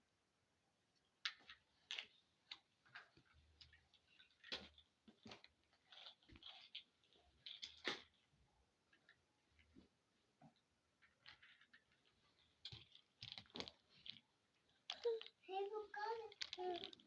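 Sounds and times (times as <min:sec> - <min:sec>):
plastic toy pieces clicking: 0:14.8 - 0:17.0.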